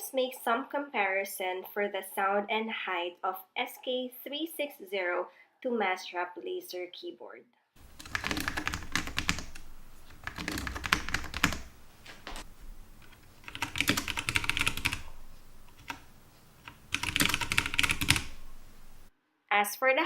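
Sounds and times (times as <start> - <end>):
mechanical keyboard typing: 7.9 - 11.8, 12.4 - 19.1.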